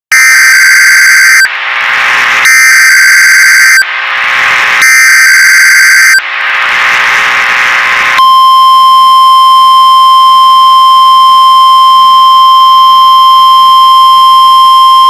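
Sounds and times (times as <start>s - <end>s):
loud static hiss: 0.1s - 9.9s.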